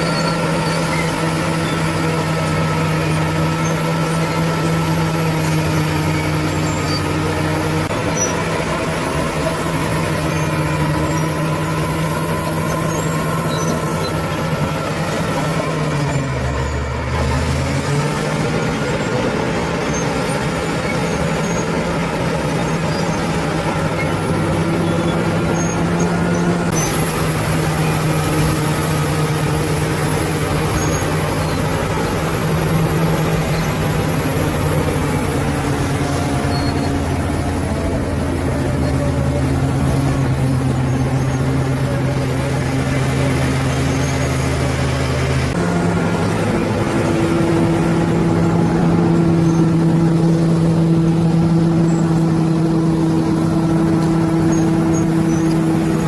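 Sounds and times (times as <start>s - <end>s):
bulldozer diesel engine running: 0.0s - 56.0s.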